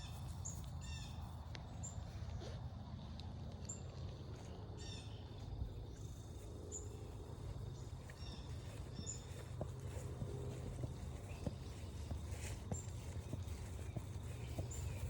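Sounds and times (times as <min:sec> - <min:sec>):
low outdoor rumble: 0:00.0 - 0:15.0
birds chirping: 0:04.8 - 0:15.0.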